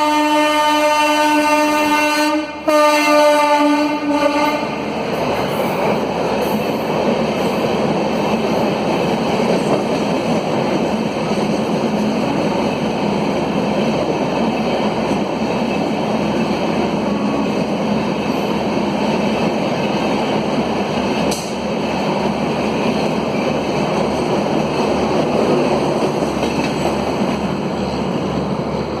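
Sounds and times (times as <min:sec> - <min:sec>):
train passing on rails: 0:00.0 - 0:29.0
sharp click: 0:21.3 - 0:21.6.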